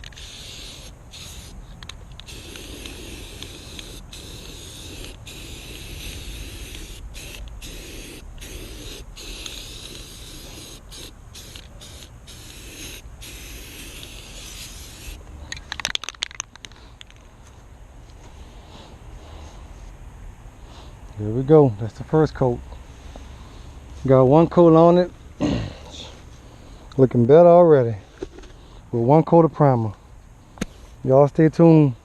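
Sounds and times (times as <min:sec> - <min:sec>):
spray hissing: 0:00.0 - 0:01.6, 0:02.2 - 0:15.2.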